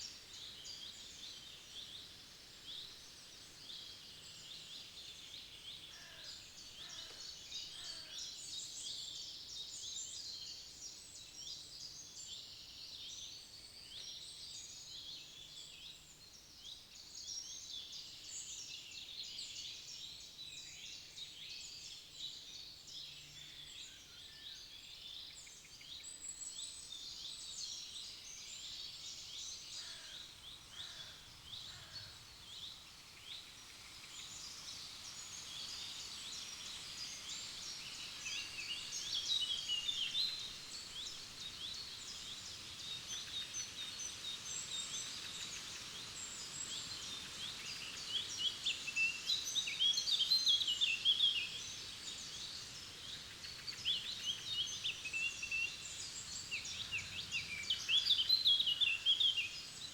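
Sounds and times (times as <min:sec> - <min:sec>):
songbirds chirping and trilling: 0:22.0 - 0:59.9.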